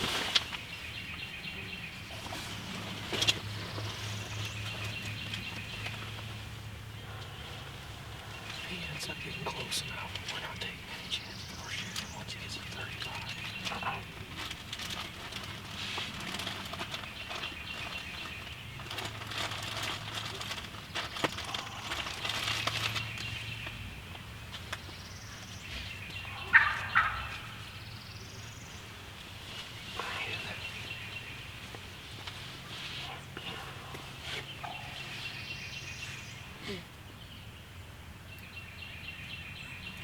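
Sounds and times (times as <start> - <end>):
turkey gobbling: 26.2 - 27.7.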